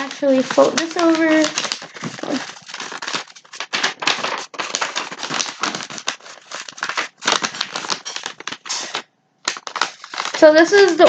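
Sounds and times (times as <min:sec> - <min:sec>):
paper crinkling and rustling: 0:00.0 - 0:11.0.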